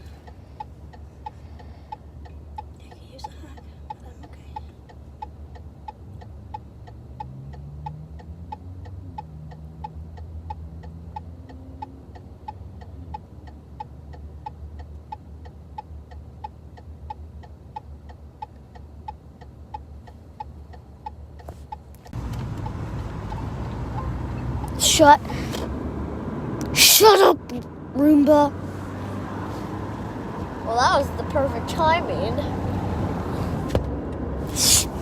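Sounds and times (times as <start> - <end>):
steady ticking: 0.0 - 25.8
rushing noise: 34.4 - 35.0.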